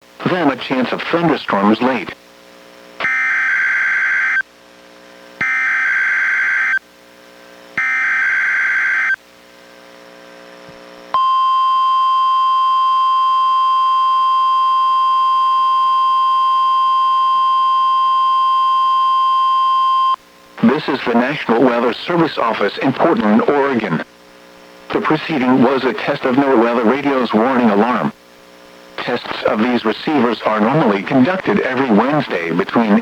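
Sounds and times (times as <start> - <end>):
steady warning alarm tone: 3.0 - 4.4, 5.4 - 6.8, 7.8 - 9.2, 11.2 - 20.2
data tone bursts: 5.4 - 6.8, 7.8 - 9.2.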